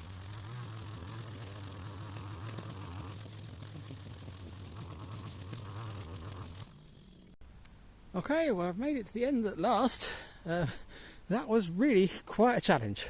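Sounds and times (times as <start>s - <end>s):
string trimmer cutting grass: 0.0s - 7.4s.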